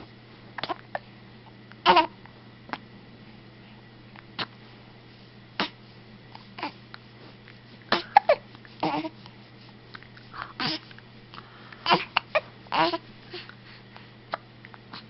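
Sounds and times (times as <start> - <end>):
baby vocal sounds: 1.8 - 2.1, 7.9 - 9.2, 10.4 - 10.9, 11.8 - 13.6.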